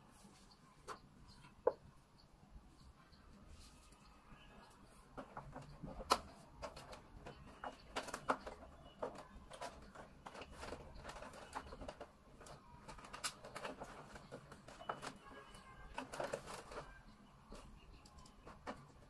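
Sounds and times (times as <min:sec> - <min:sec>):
clicks and knocks on plastic: 0:05.1 - 0:19.0.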